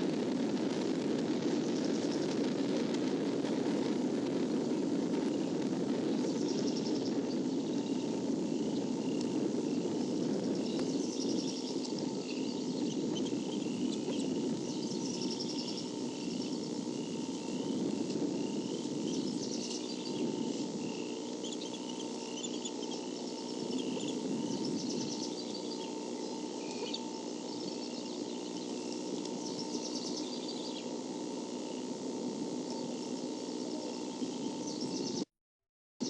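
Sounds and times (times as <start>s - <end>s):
low background rumble: 0.0s - 35.3s
faint rhythmic high squeak: 6.2s - 17.8s, 18.4s - 31.0s.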